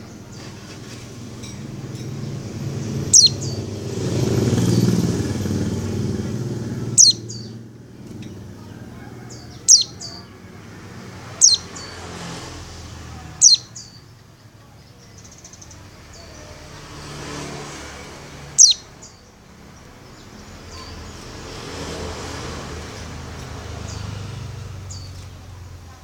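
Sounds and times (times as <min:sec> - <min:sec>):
passing vehicle: 0:00.0 - 0:26.0
bird whistling calls: 0:03.1 - 0:03.6, 0:07.0 - 0:07.6, 0:09.6 - 0:10.2, 0:11.4 - 0:11.7, 0:13.4 - 0:14.0, 0:18.6 - 0:18.9.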